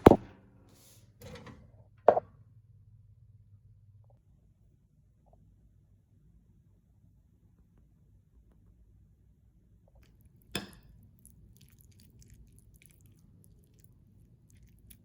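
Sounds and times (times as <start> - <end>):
person chewing crunchy food: 10.0 - 15.0.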